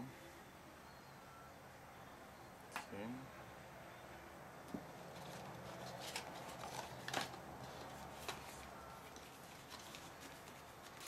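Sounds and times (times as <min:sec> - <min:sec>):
packaging clicks and rustles: 0:05.1 - 0:11.0.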